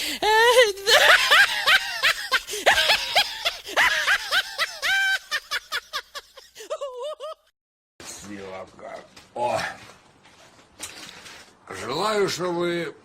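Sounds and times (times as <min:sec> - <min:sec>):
high-pitched laughter: 0:00.8 - 0:07.5.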